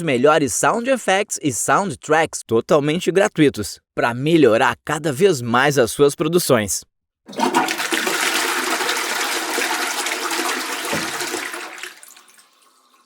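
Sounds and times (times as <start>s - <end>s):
toilet flushing: 7.3s - 13.0s.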